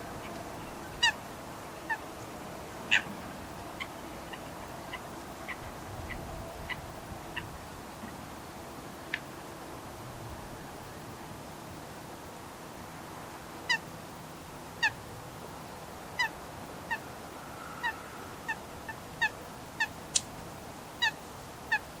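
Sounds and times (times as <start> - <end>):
bird giving sharp calls: 2.9 - 3.1
high sharp bird click: 20.1 - 20.4.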